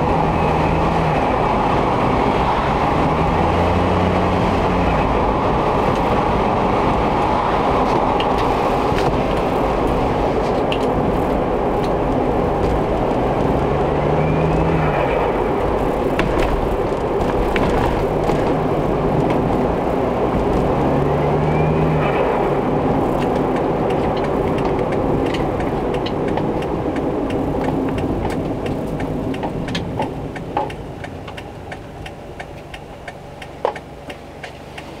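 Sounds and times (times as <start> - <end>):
van engine and road noise: 0.0 - 35.0.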